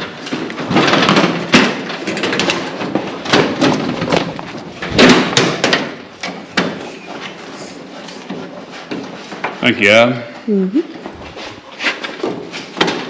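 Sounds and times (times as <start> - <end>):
sheet metal clanks and knocks: 0.0 - 7.0.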